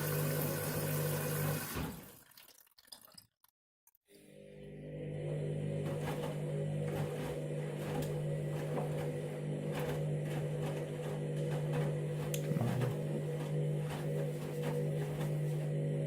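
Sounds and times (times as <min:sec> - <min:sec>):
machine mechanical hum: 0:04.2 - 0:16.0.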